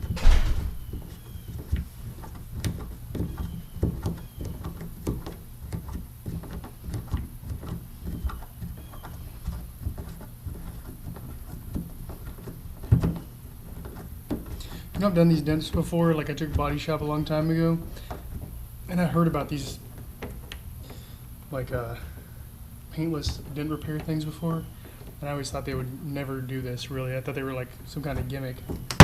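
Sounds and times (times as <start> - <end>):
knocks and rustles of handled tools: 0.0 - 18.6, 27.3 - 29.0
loud thump: 0.1 - 0.9.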